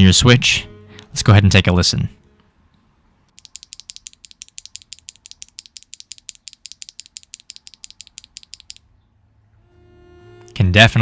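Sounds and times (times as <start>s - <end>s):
keyboard switch clacking: 3.3s - 8.8s.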